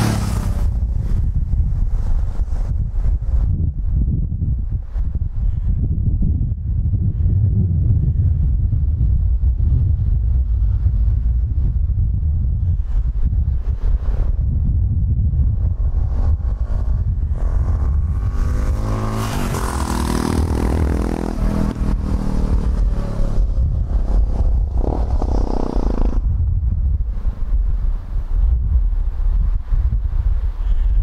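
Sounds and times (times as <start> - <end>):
motorcycle engine accelerating: 0.0 - 3.7, 14.4 - 28.7
wind rumble on microphone: 0.0 - 31.0.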